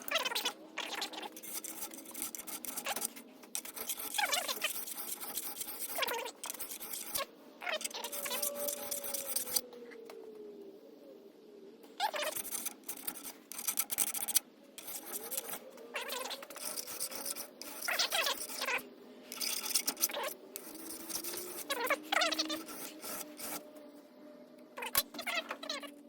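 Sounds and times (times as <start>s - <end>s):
metal file scraping metal: 1.0s - 9.6s, 12.1s - 23.7s.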